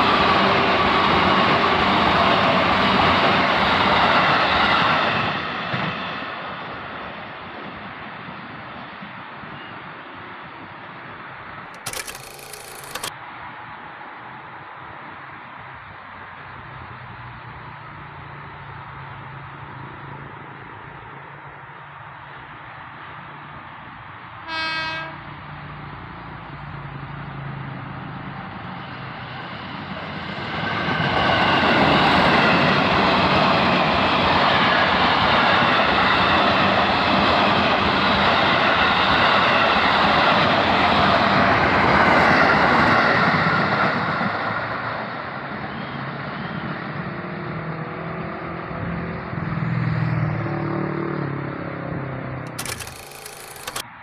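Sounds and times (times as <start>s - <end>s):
electric train passing: 0.0s - 8.5s, 22.0s - 46.3s
train horn blast: 24.4s - 25.4s.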